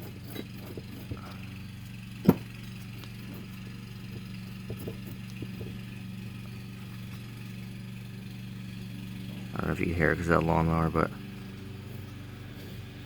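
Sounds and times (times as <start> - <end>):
loose wheel bearing knocking: 0.0 - 6.8
wheel bearing clicks: 0.0 - 7.5
lawnmower engine droning: 0.0 - 13.0.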